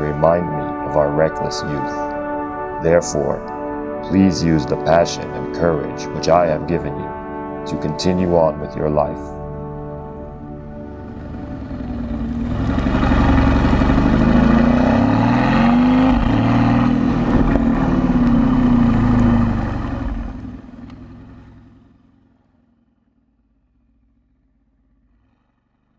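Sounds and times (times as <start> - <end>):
car engine revving: 3.0 - 3.6, 9.6 - 22.5.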